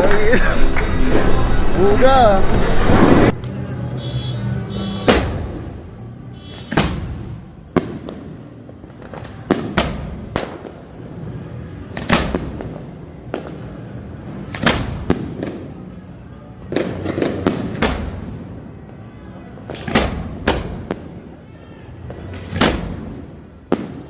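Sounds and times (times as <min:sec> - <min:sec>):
fireworks bangs: 0:04.7 - 0:16.0, 0:16.6 - 0:18.7, 0:19.6 - 0:24.0
fireworks crackling: 0:04.8 - 0:16.0, 0:16.6 - 0:18.7, 0:19.6 - 0:24.0.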